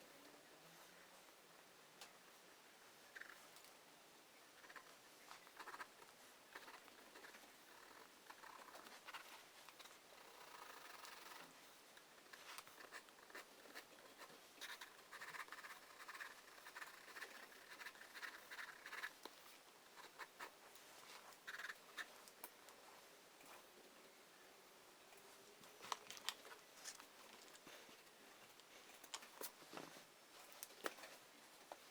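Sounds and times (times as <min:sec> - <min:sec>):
pencil scratching on paper: 0:04.6 - 0:11.6, 0:12.2 - 0:20.6, 0:21.2 - 0:22.1.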